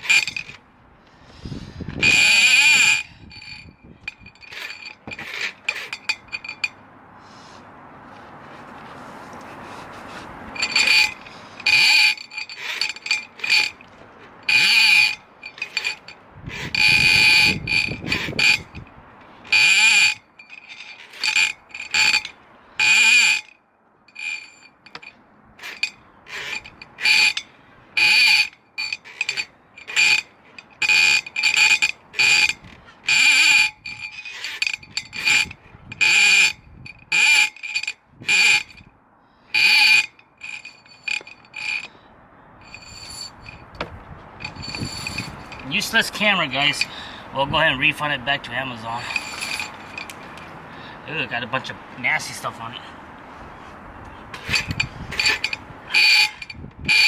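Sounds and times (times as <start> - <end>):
reel ratchet clicking: 0.0 - 0.6, 1.9 - 6.8, 10.6 - 38.9, 39.5 - 42.0, 42.6 - 47.0, 49.0 - 50.5, 54.3 - 57.0.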